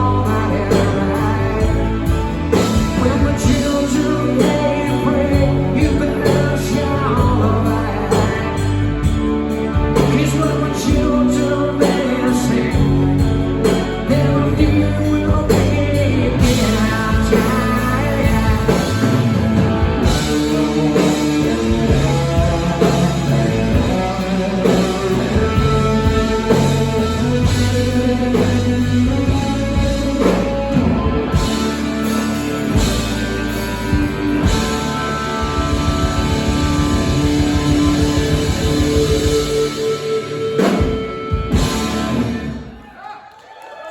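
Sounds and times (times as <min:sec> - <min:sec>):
person singing: 0:00.0 - 0:33.1
live rock band playing: 0:00.0 - 0:42.8.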